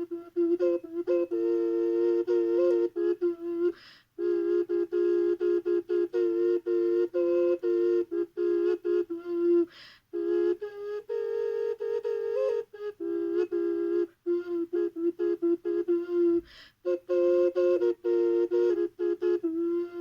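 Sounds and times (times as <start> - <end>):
ocarina melody: 0.0 - 20.0
quick breath: 3.8 - 4.2, 9.7 - 10.1, 16.4 - 16.8.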